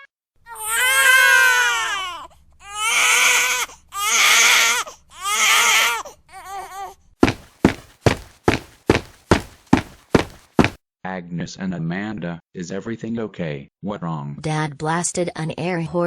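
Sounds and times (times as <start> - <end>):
sharp thumps: 7.2 - 10.8.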